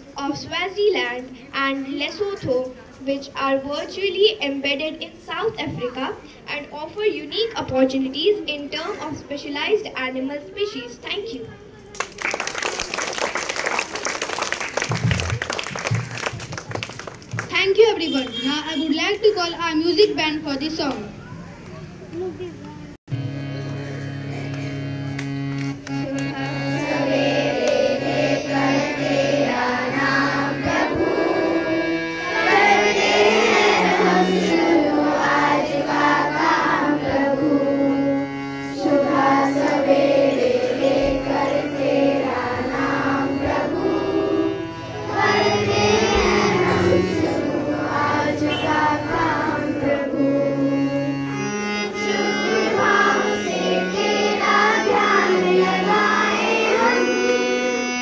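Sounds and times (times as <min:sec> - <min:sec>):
band holding instrumental notes: 0:23.1 - 0:58.0
voices singing: 0:25.9 - 0:58.0.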